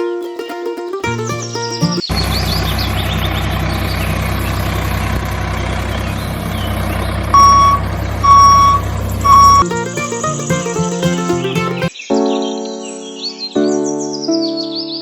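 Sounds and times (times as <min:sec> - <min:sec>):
truck engine running: 0:01.1 - 0:11.9
reversing alarm beeping: 0:07.3 - 0:09.8.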